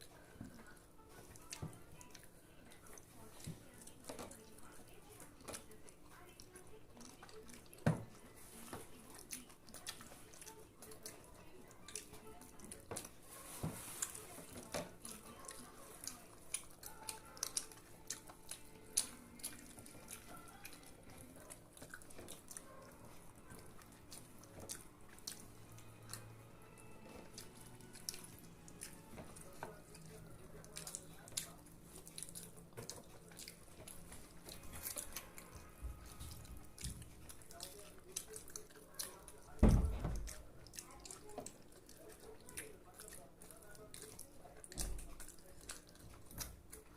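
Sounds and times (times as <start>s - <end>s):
chewing smacks: 0.0s - 46.9s
fingers clicking at food: 14.6s - 39.6s.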